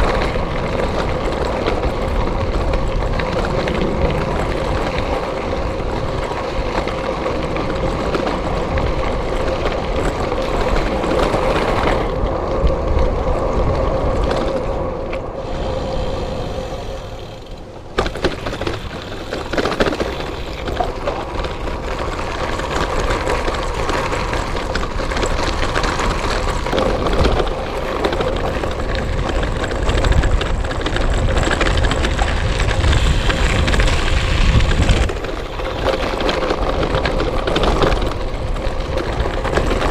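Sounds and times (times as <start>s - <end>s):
low rumble on microphone: 0.0s - 18.0s
bike tyres rumbling on rough track: 0.0s - 39.9s.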